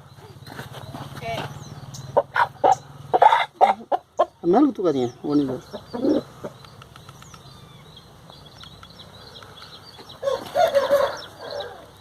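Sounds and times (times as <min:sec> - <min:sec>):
chicken calling: 0:02.1 - 0:04.6, 0:05.2 - 0:06.6, 0:09.3 - 0:12.0.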